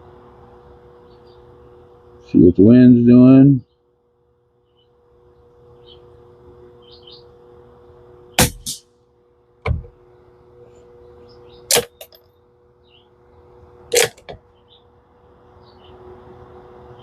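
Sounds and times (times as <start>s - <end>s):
birds chirping: 1.0s - 2.6s, 4.6s - 7.4s, 11.0s - 12.1s, 14.4s - 16.1s
suppressed rifle shots: 8.4s - 8.8s
dull thud: 9.6s - 10.0s.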